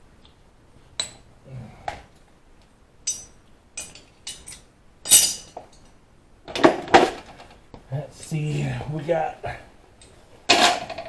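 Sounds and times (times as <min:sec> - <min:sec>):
metal hand tools clinking: 0:03.0 - 0:05.9.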